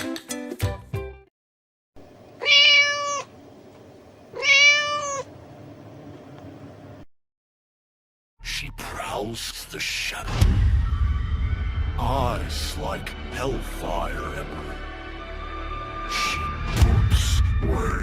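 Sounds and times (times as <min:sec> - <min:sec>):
music: 0:00.0 - 0:01.3, 0:08.4 - 0:18.0
cat meowing: 0:02.4 - 0:03.3, 0:04.3 - 0:05.3.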